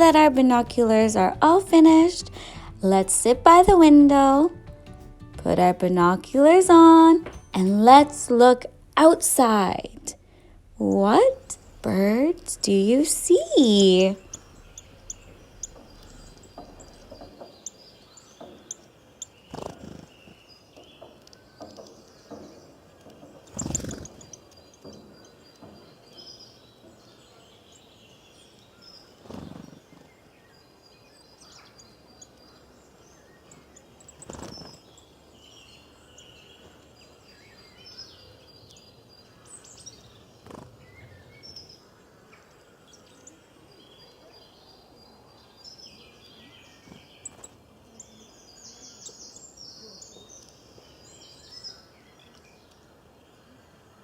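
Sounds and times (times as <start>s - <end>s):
short thumps: 0.0s - 17.4s
background hiss: 0.0s - 20.2s
small birds chirping: 0.0s - 53.9s.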